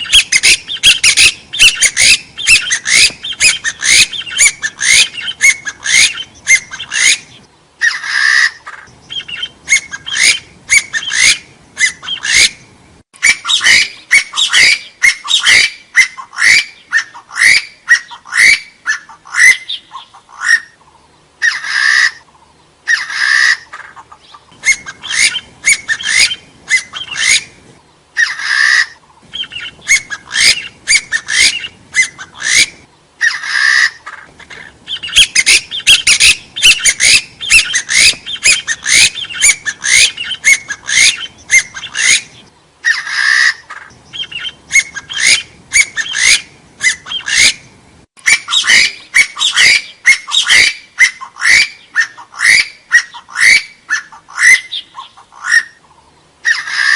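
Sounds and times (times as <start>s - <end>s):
partridge calling upward notes: 28.2s - 55.8s.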